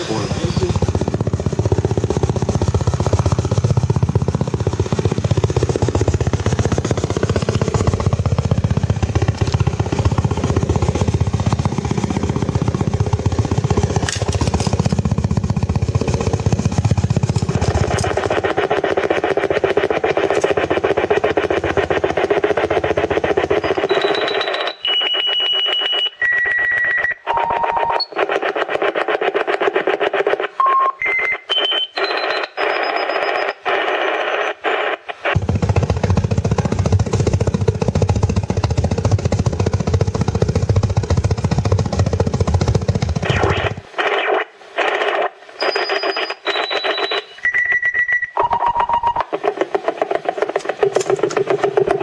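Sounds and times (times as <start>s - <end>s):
rapid-pulsed radio buzzing: 0.0s - 47.5s
harsh rapid radio buzzing: 15.9s - 35.4s, 42.8s - 52.0s
steady whistle tone: 23.5s - 28.2s, 30.6s - 33.6s, 45.6s - 49.2s
whistle tone dropping in pitch: 23.6s - 28.2s.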